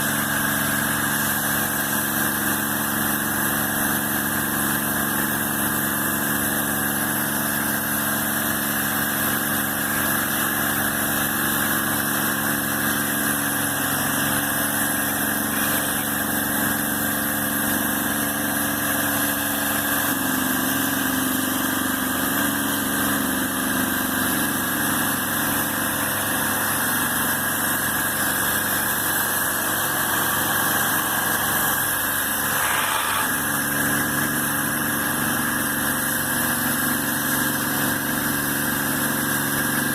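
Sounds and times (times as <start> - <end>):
machine motor humming: 9.7 - 36.2.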